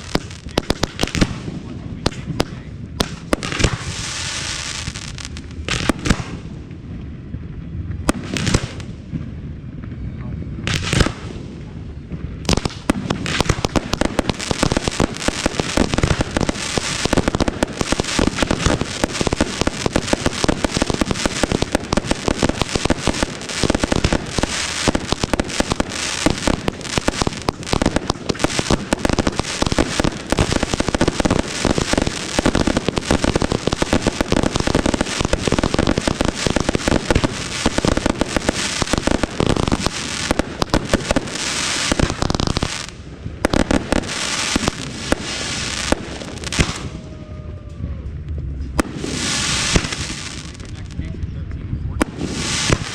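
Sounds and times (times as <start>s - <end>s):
fireworks bursting and crackling: 0.0s - 47.3s, 48.0s - 52.9s.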